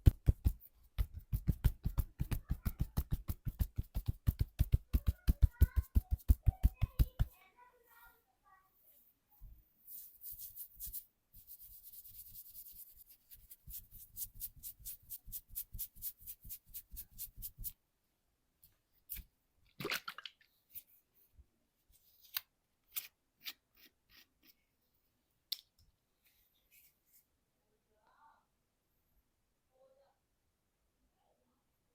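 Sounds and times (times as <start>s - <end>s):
hands rubbing hair and skin: 0.0s - 7.4s, 9.8s - 17.8s.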